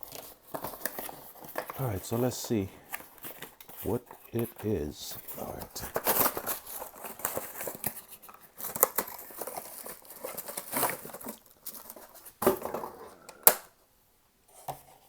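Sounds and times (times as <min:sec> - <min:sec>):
sharp crackles of packaging: 0:00.0 - 0:04.5, 0:05.3 - 0:12.7
wrapping crinkling and tearing: 0:00.0 - 0:04.5, 0:05.3 - 0:12.4.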